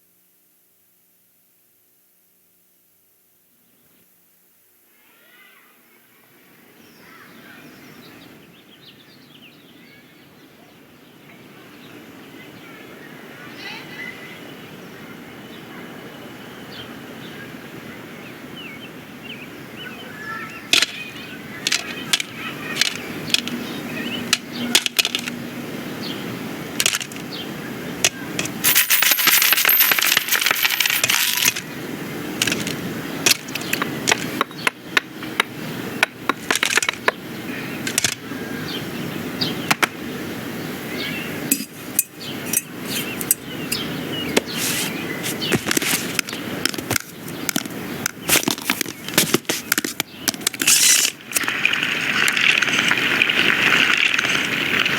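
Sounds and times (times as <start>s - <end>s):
toy clicks and clatters: 20.7s - 21.0s, 21.6s - 23.6s, 24.3s - 25.4s, 26.8s - 27.2s, 28.4s - 31.6s, 32.4s - 34.5s, 37.8s - 38.2s.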